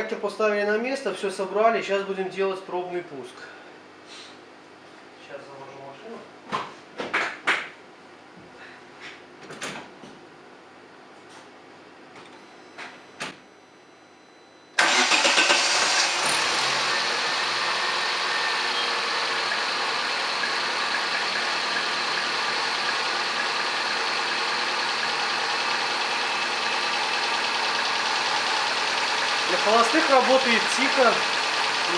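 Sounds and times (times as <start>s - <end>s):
car engine starting and idling: 14.8s - 31.9s.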